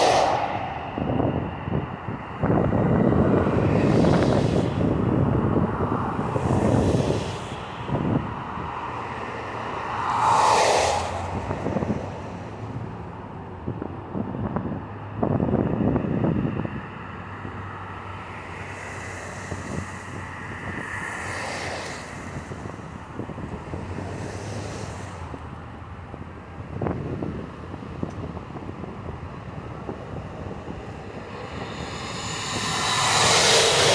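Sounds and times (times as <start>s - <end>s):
road traffic noise: 0.0s - 33.9s
wind buffeting microphone: 0.0s - 33.9s.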